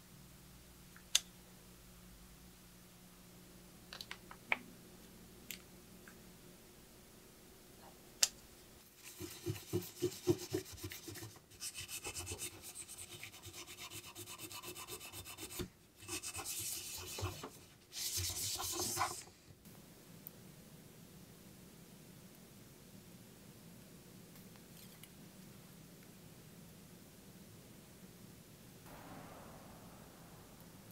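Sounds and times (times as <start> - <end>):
rubbing strokes: 9.0 - 19.3.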